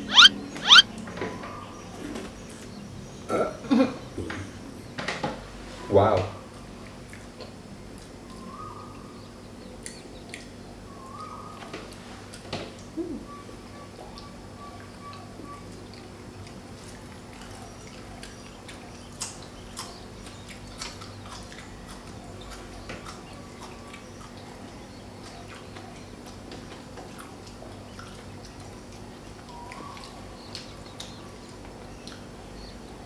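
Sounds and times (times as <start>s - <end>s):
sharp clicks: 0.0s - 0.8s.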